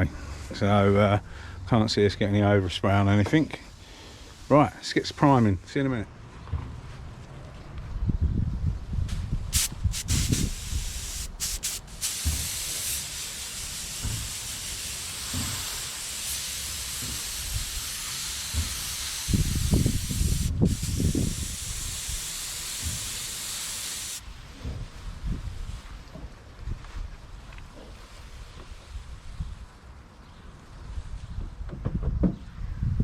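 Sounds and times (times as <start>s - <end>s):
wind buffeting microphone: 7.6s - 11.2s, 17.3s - 23.2s, 24.3s - 26.0s, 30.9s - 33.0s
spray paint hissing: 9.1s - 24.4s.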